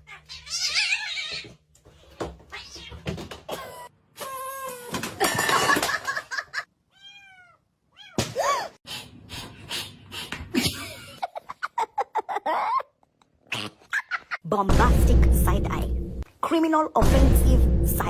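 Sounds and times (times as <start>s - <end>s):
cat meowing: 6.9s - 8.2s
person laughing: 10.5s - 14.4s.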